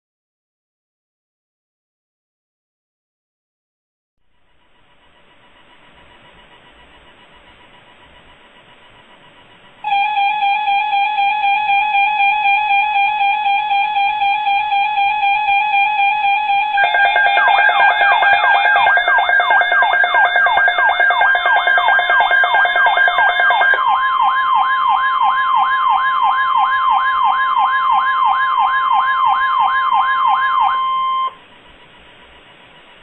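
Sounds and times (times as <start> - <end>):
siren-like electronic wail: 9.8 - 31.4
steady higher tone: 14.8 - 24.2
steady electronic alert tone: 16.7 - 23.9.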